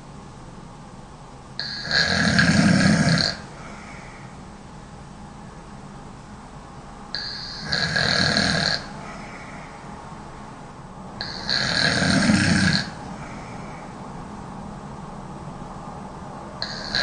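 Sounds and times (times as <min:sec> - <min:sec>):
woman snoring: 0:01.6 - 0:04.3, 0:07.2 - 0:09.8, 0:11.2 - 0:13.6, 0:16.6 - 0:17.0.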